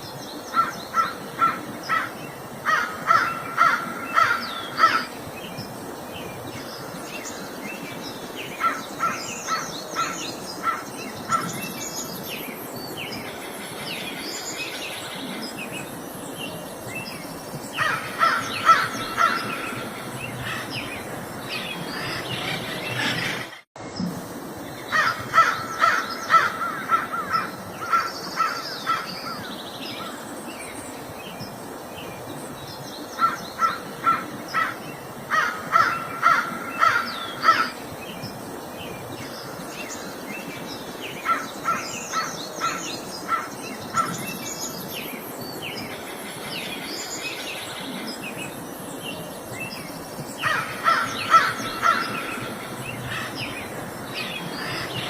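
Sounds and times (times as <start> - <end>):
crows cawing: 2.7 - 5.1, 17.8 - 20.7, 25.0 - 29.1, 33.2 - 37.7, 50.4 - 53.4, 54.6 - 55.0.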